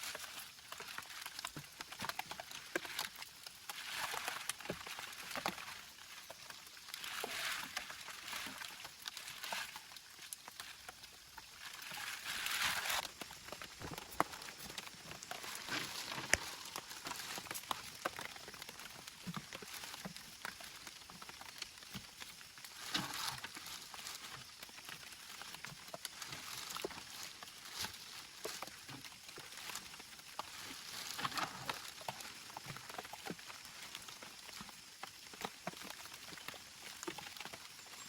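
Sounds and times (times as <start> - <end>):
rain pattering: 0.0 - 24.3
rustling: 11.4 - 20.2.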